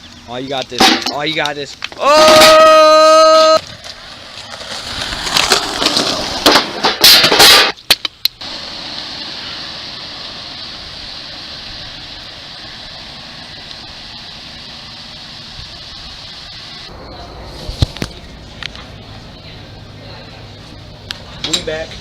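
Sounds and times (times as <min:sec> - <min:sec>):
steady hiss: 0:00.0 - 0:22.0
skateboard rolling and clattering: 0:03.6 - 0:07.8.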